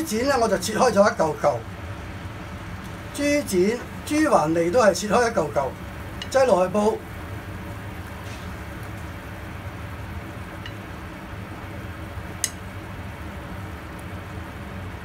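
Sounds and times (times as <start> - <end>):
water boiling in a pot: 0.0 - 15.0
sharp click: 12.4 - 12.6.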